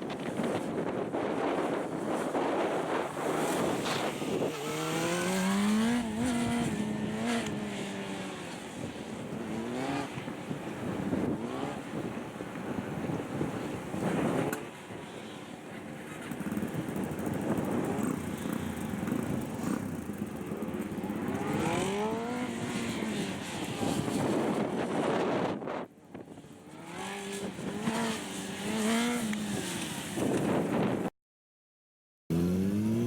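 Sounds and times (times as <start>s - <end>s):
motorcycle engine revving: 2.2s - 12.2s, 16.2s - 25.4s, 26.5s - 31.0s, 32.3s - 33.0s.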